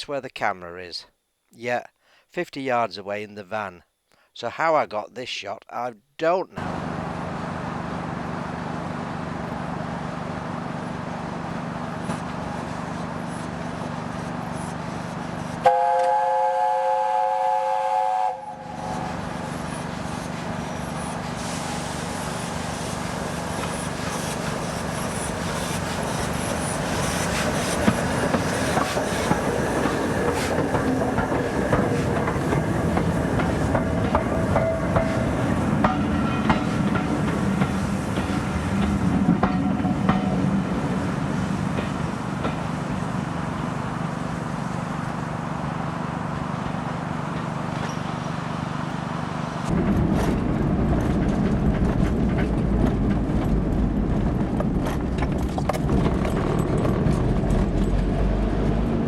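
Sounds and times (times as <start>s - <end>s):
train running noise: 6.6s - 59.0s
steam locomotive chime whistle: 15.6s - 19.8s, 34.5s - 35.3s
train wheel clicks: 23.5s - 40.4s, 50.0s - 58.9s.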